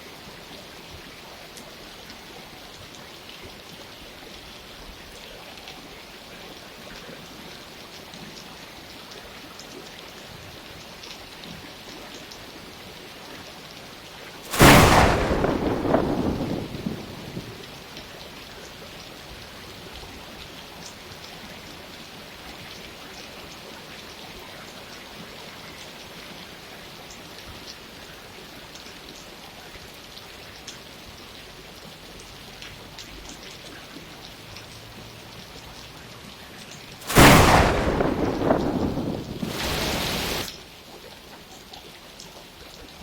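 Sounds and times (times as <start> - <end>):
steady rain falling: 0.0 - 43.0
thunderclap rumbling: 14.5 - 18.1, 37.0 - 40.5.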